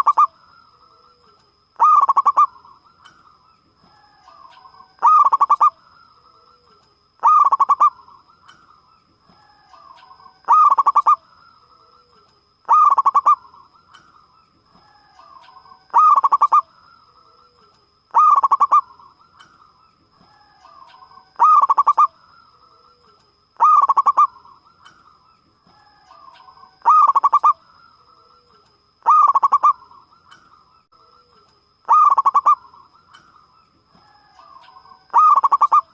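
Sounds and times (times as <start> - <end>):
dove trilling coos: 0.0 - 0.4, 1.0 - 2.9, 4.0 - 5.8, 6.4 - 8.4, 9.4 - 13.8, 14.8 - 19.5, 20.2 - 24.9, 25.8 - 30.4, 31.0 - 33.2, 34.0 - 35.9.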